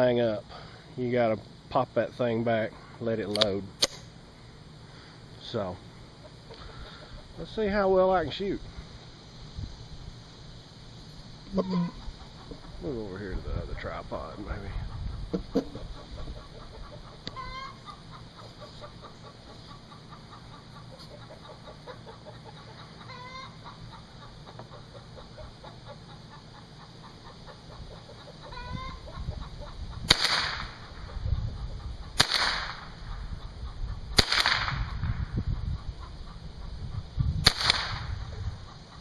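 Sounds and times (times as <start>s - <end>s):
chickens clucking: 4.7s - 8.6s, 11.4s - 30.1s, 30.7s - 32.2s, 32.8s - 34.2s, 34.9s - 37.4s, 38.1s - 39.0s
rifle shots: 30.1s - 30.8s, 32.2s - 32.9s, 34.2s - 34.9s, 37.4s - 38.1s.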